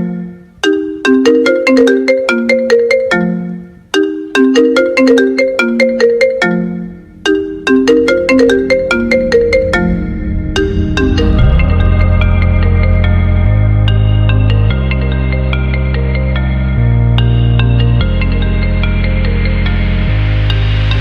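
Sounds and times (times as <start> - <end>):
marimba-like ringtone melody: 0.0 - 10.1
low sustained bass: 9.0 - 21.0.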